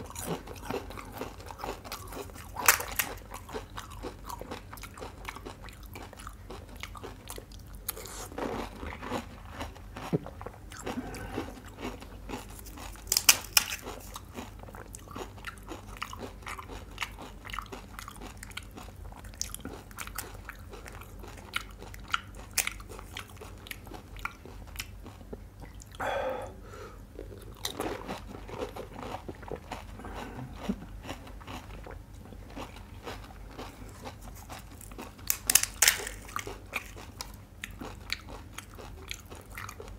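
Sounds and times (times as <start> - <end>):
crunching fried snacks: 0.0 - 25.3, 27.2 - 39.9
wet chewing: 27.2 - 39.9.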